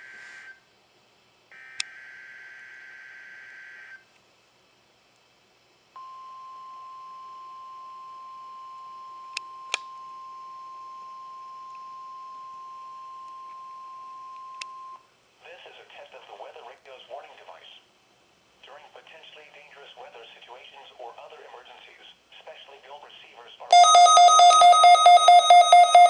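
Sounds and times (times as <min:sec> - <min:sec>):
steady alert tone: 0:23.7 - 0:26.0.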